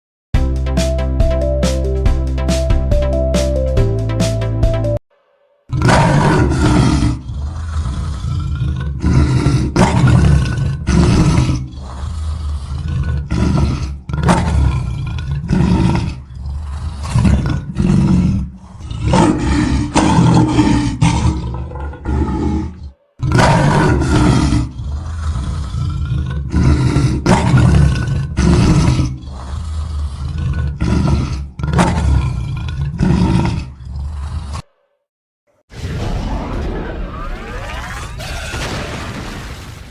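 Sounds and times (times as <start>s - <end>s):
lion roaring: 5.7s - 35.0s.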